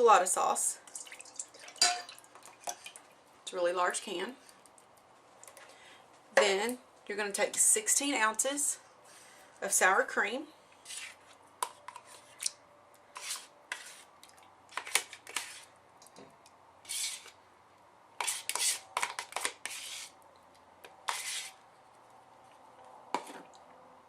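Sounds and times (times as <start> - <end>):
spoon scraping a tub: 10.8 - 12.5, 13.1 - 14.1, 14.7 - 15.7, 16.9 - 17.4, 18.2 - 20.2, 21.0 - 21.6.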